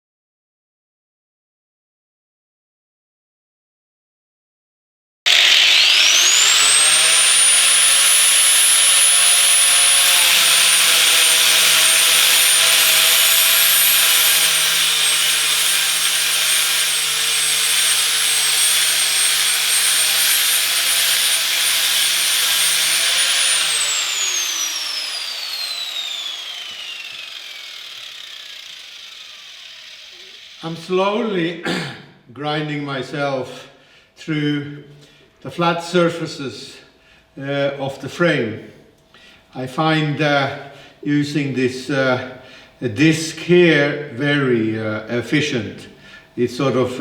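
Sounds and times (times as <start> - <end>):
angle grinder grinding metal: 5.3 - 31.0.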